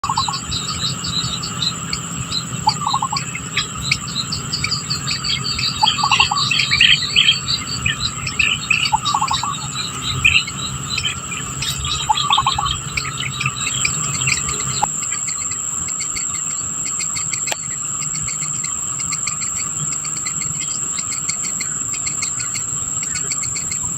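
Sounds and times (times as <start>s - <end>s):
run of lower bird notes: 0.0s - 15.3s
birds chirping and twittering: 0.0s - 23.9s
high-pitched insect drone: 0.0s - 23.9s.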